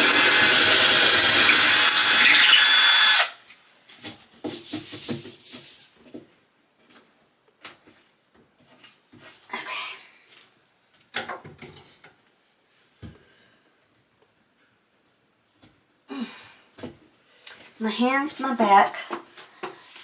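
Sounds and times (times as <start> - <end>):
power drill running: 0.0 - 3.4.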